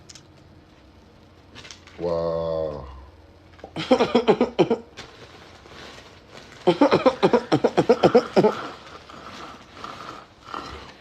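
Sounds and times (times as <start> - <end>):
person laughing: 3.7 - 4.9, 6.7 - 8.7.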